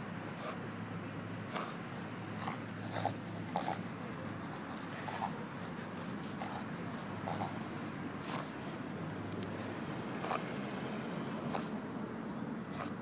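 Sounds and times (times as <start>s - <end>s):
dog reverse sneezing: 0.3s - 0.6s, 1.5s - 8.8s, 10.2s - 10.5s, 11.5s - 11.8s, 12.7s - 13.0s.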